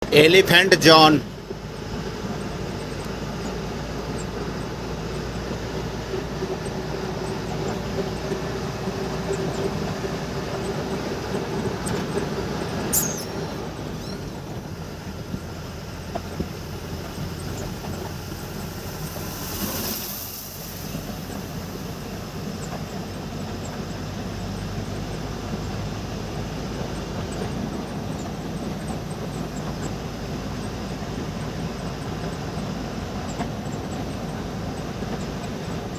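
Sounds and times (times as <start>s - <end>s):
train running rumble: 0.0s - 35.9s
brief whoosh: 18.6s - 21.1s.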